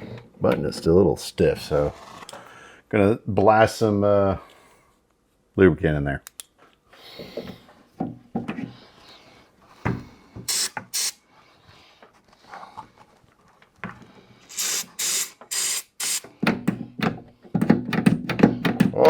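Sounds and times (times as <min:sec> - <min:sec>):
aerosol spray hissing: 0:10.5 - 0:11.2, 0:14.5 - 0:16.3.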